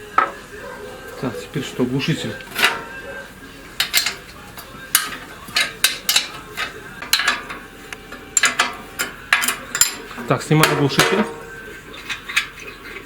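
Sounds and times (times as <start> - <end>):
hand tools clinking against metal: 2.4 - 3.0, 3.8 - 7.7, 8.4 - 12.7.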